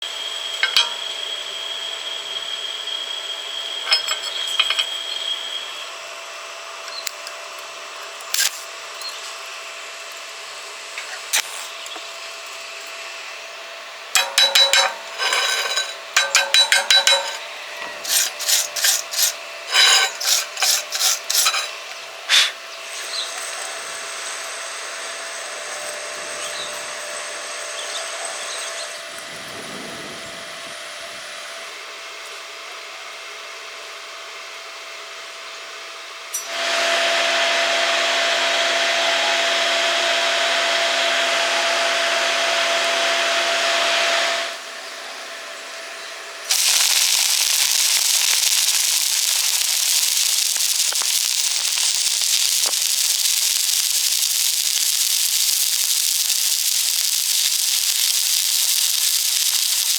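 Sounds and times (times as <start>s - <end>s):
rhythmic scraping on steel: 14.2s - 22.1s, 46.5s - 59.9s
steady hiss: 14.2s - 23.7s, 46.5s - 59.9s.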